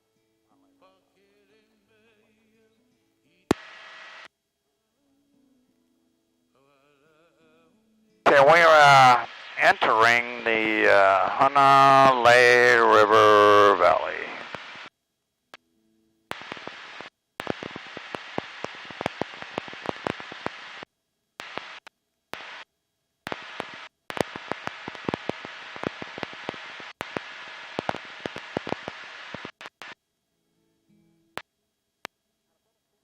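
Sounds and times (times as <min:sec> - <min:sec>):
crackling static with pops: 0:03.5 - 0:04.4, 0:08.3 - 0:30.1, 0:31.3 - 0:32.2.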